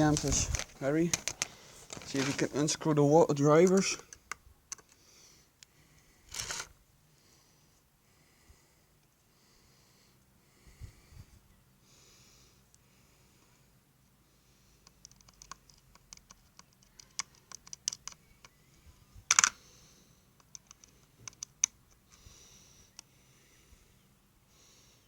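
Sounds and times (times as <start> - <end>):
screwdriver clicks and scrapes: 6.3 - 6.7.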